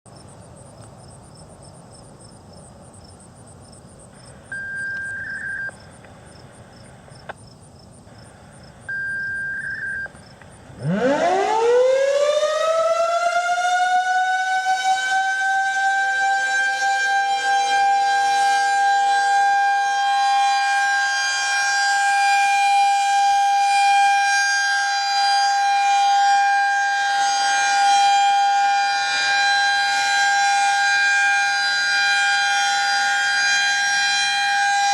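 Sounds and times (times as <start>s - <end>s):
insects chirping: 0.1s - 10.8s
short beeps: 4.5s - 5.8s, 8.9s - 10.2s
siren winding up: 10.8s - 14.4s.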